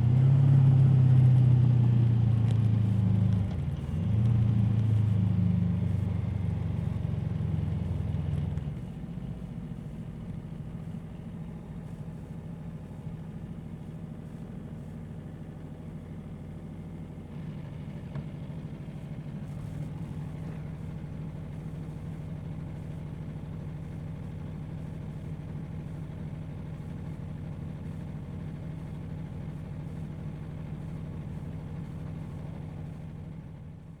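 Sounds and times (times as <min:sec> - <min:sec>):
motorcycle engine idling: 0:09.0 - 0:34.0.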